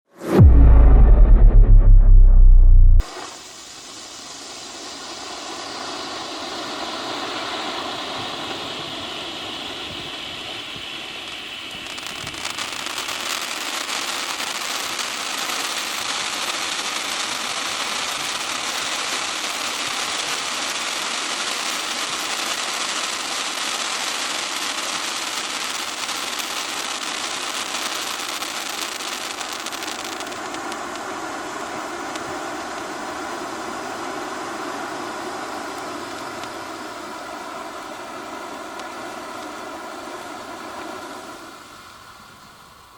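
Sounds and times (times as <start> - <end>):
firework fountain hissing: 3.0 - 42.9.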